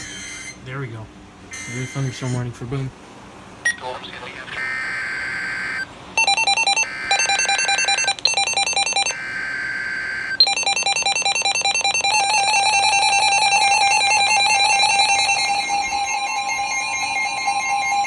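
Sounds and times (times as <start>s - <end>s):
screeching data tones: 0.0s - 0.6s, 1.5s - 2.5s, 3.7s - 18.0s
rapid electronic alert beeping: 1.5s - 2.4s, 4.5s - 18.0s.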